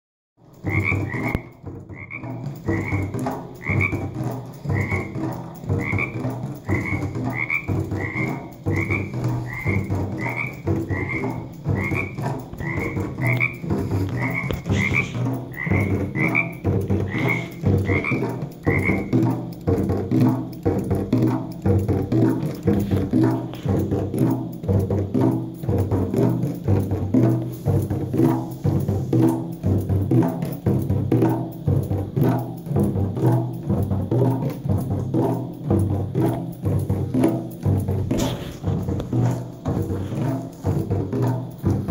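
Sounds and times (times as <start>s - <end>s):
low rain drum drumming: 0.4s - 41.9s
frog calling: 0.6s - 19.4s.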